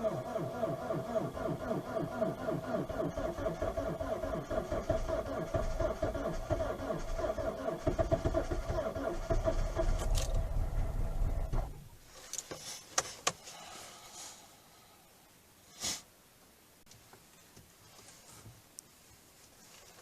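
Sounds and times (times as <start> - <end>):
vehicle engine rumbling: 0.0 - 12.3
short hiss: 15.6 - 16.2.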